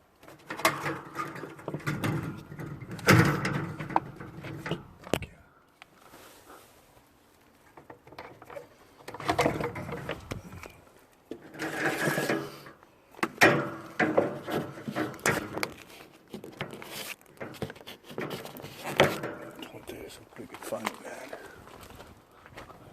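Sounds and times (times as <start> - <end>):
scrap metal knocking and clattering: 0.3 - 5.1, 7.7 - 10.7, 11.3 - 19.7.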